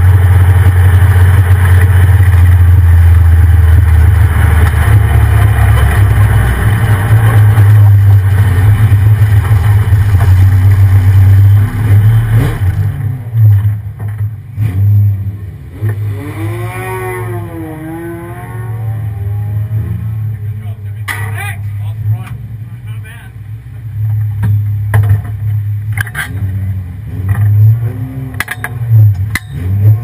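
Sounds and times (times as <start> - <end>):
pickup engine droning: 0.0 - 30.0
softer engine note: 16.3 - 21.0.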